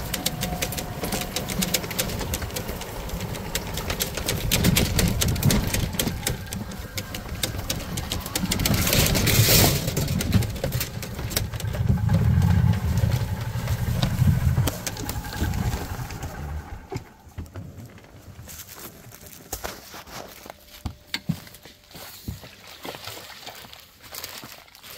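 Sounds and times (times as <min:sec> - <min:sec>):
small vehicle engine running: 0:00.0 - 0:17.6
rattles and knocks: 0:00.0 - 0:18.3.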